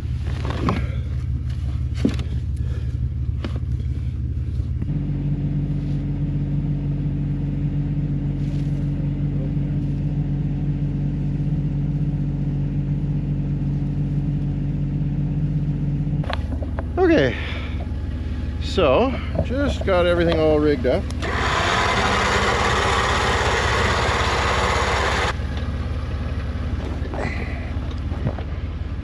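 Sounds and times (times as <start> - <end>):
engine idling: 0.0 - 29.0.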